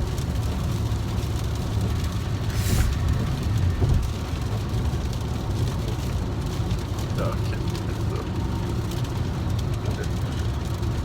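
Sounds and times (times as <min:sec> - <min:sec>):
car engine and tyres rumbling: 0:00.0 - 0:11.0
tyre swish on wet road: 0:02.3 - 0:04.2.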